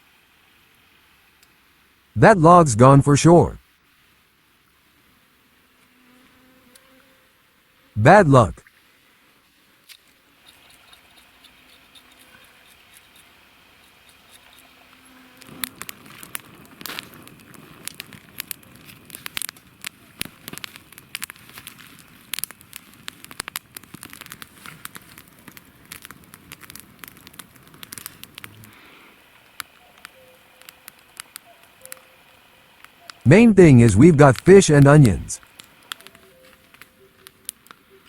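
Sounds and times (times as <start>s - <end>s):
campfire crackling: 8.0s - 38.0s
sharp pops and snaps: 15.4s - 32.0s.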